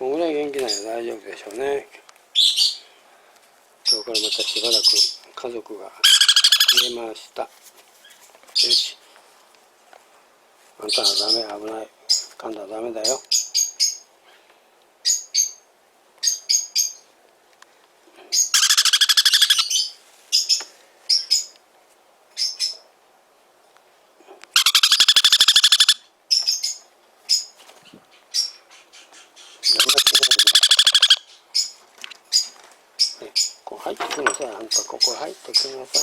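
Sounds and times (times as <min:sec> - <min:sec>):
chicks pulsing calls: 0:06.0 - 0:07.0, 0:18.4 - 0:21.6, 0:24.6 - 0:33.6
chicks high chirps: 0:06.1 - 0:06.9, 0:18.4 - 0:21.5, 0:24.6 - 0:27.6, 0:28.2 - 0:33.6.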